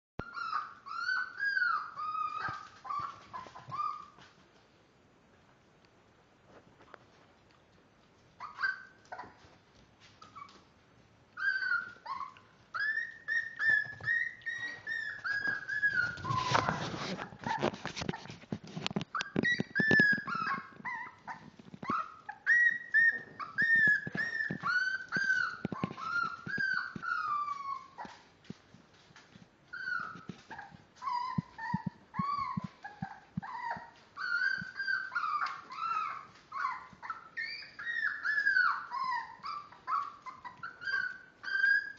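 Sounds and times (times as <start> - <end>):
puppies whining and whimpering: 0.2 - 4.3, 8.4 - 9.6, 10.2 - 10.7, 11.3 - 28.4, 29.7 - 41.9
scratchy rustling: 13.0 - 41.8.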